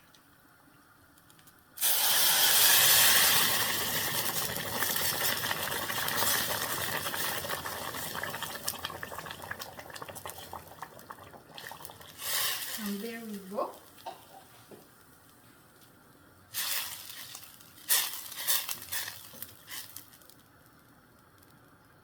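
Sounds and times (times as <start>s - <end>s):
steam hissing and crackling: 1.8s - 13.6s, 16.5s - 20.4s.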